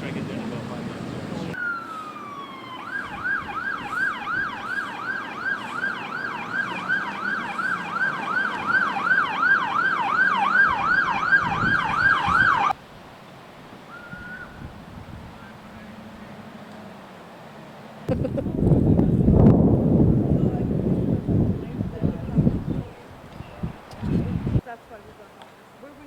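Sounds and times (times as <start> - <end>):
emergency vehicle siren: 0.1 - 12.8, 13.9 - 14.8.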